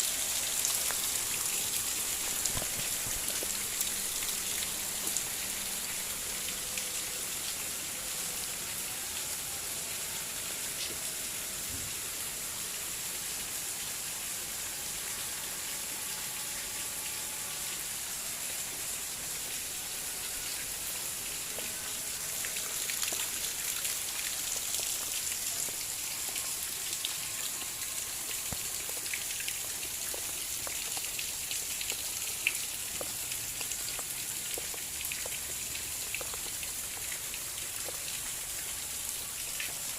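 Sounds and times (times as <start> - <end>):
heavy rain falling: 0.0 - 8.9, 18.1 - 39.9
raindrop ticks: 0.6 - 1.2, 1.8 - 5.3, 28.3 - 37.2.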